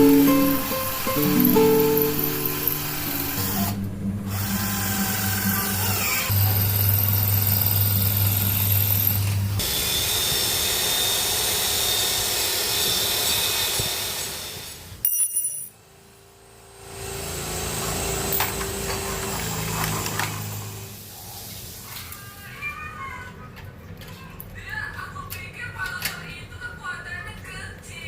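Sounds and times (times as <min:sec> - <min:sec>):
electric drill running: 0:00.0 - 0:14.9.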